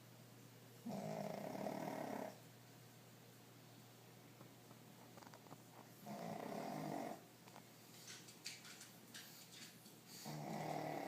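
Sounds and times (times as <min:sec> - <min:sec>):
man snoring: 0:10.3 - 0:11.0.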